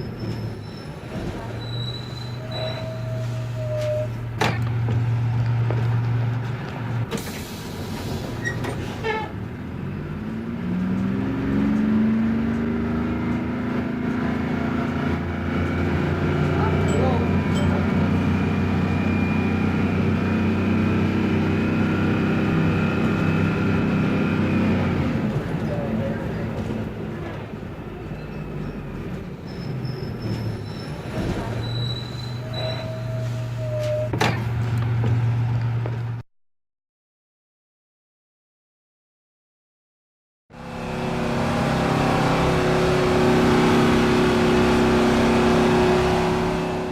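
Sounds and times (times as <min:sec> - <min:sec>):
faint high-pitched squeals: 0:00.0 - 0:04.2, 0:27.9 - 0:34.2
bus engine pulling away: 0:00.0 - 0:36.2, 0:40.5 - 0:46.9
air brakes hissing: 0:07.1 - 0:09.2, 0:29.4 - 0:34.1.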